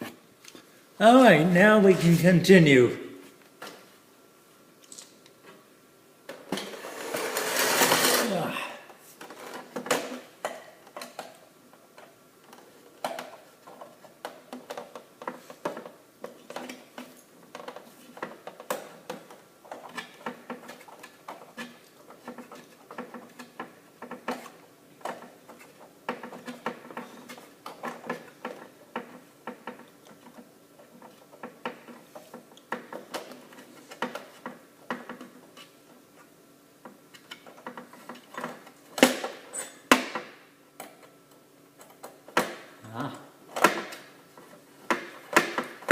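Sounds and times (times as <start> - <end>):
plastic parts clicking and scratching: 9.2 - 10.2, 12.0 - 39.4.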